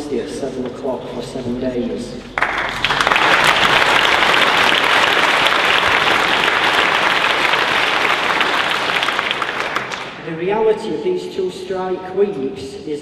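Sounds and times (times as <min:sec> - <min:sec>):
audience applauding: 0:02.4 - 0:10.2.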